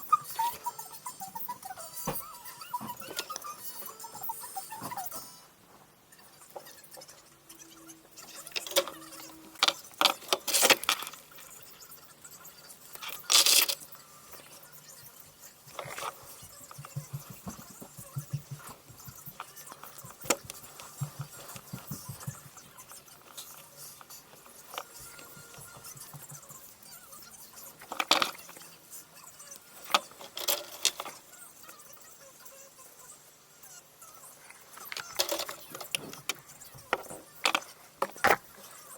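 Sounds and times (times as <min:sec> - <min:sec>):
clicks and rattles of small objects: 0:08.2 - 0:11.8, 0:12.9 - 0:14.6, 0:15.7 - 0:26.5, 0:27.7 - 0:28.7, 0:29.5 - 0:31.3, 0:34.6 - 0:38.8
clicks and knocks of small objects: 0:08.5 - 0:11.5, 0:12.9 - 0:13.9, 0:27.8 - 0:28.6, 0:29.8 - 0:31.2, 0:34.7 - 0:38.6.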